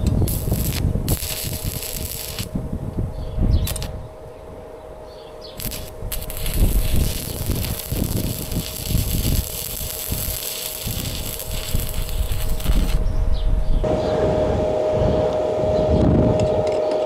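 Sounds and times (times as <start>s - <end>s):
welding arc crackling and hissing: 0.0s - 2.7s, 3.6s - 4.0s, 5.6s - 13.0s
wind buffeting microphone: 0.0s - 4.7s, 5.5s - 17.0s
steady hum: 0.0s - 17.0s.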